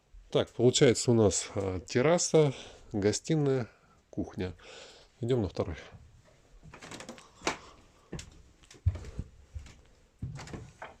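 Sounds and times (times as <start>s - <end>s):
footsteps on stairs: 7.4s - 11.0s.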